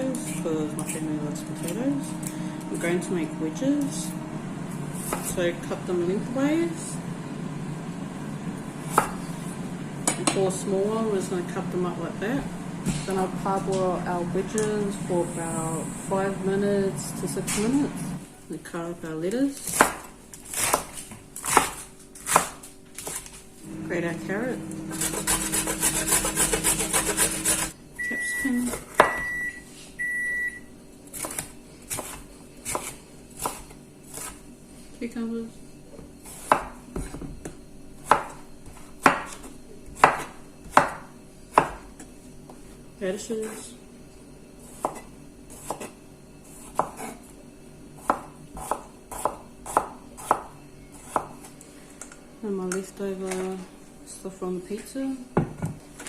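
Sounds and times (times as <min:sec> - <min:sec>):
knife chopping on cutting board: 0:08.9 - 0:09.2, 0:25.0 - 0:27.7, 0:31.2 - 0:34.4, 0:36.2 - 0:37.4, 0:38.0 - 0:41.9, 0:44.7 - 0:45.9, 0:46.5 - 0:47.2, 0:48.0 - 0:51.4
carrot being grated: 0:24.8 - 0:27.7
kitchen appliance beeps: 0:27.3 - 0:30.7.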